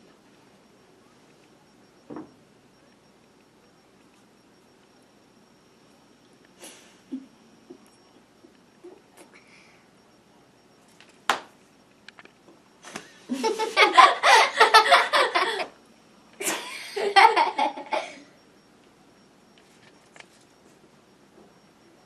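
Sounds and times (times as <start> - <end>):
people laughing: 12.9 - 15.7.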